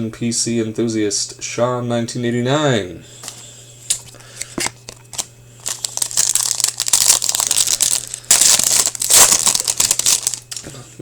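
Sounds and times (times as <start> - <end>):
plastic wrapper crinkling and tearing: 3.9 - 10.8.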